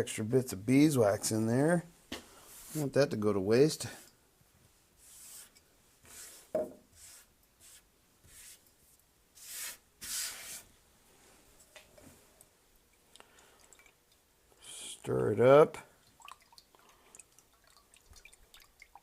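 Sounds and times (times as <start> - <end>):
wax scraping and rubbing: 5.0 - 8.6, 9.4 - 10.7.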